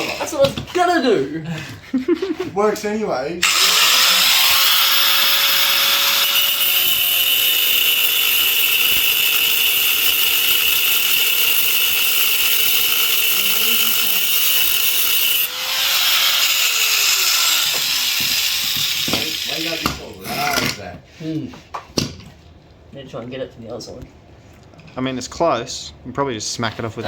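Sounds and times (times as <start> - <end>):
power tool whining: 3.4 - 20.6.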